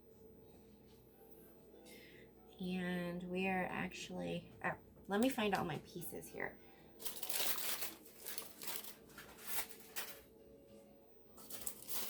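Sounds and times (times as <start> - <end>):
foil rustling and crinkling: 7.0 - 10.3, 11.4 - 12.0.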